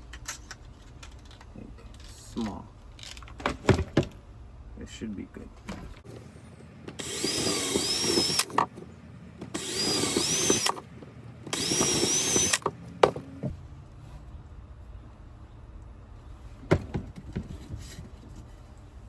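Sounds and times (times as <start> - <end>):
power drill boring into wood: 7.0 - 8.6, 9.5 - 10.8, 11.5 - 12.7.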